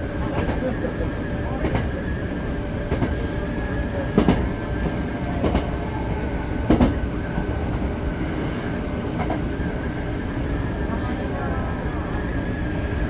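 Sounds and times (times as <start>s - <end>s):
train rumble and hum: 0.0s - 13.0s.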